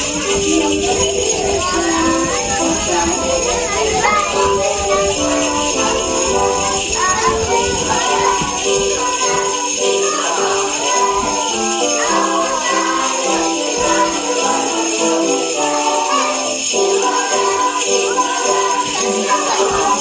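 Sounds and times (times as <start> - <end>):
sleigh bells jingling: 0.0 - 20.0.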